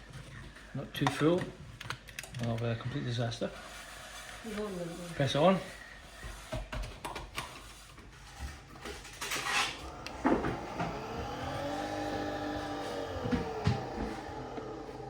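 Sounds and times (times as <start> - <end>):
motor hum rising in pitch: 9.6 - 15.0.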